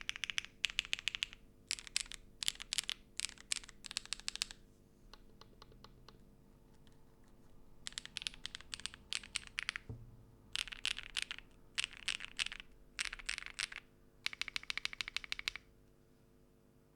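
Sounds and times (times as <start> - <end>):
mechanical keyboard typing: 0.0 - 4.6, 5.2 - 6.2, 7.8 - 9.9, 10.5 - 15.6.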